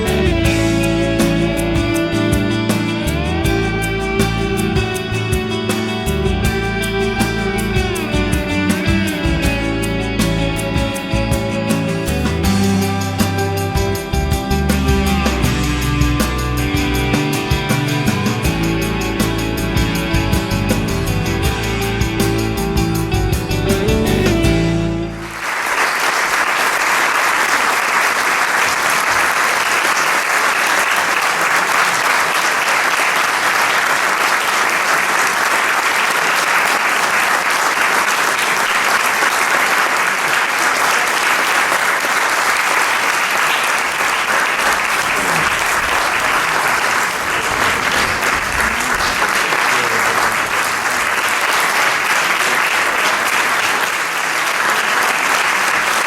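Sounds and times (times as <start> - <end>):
audience applauding: 24.2 - 56.0.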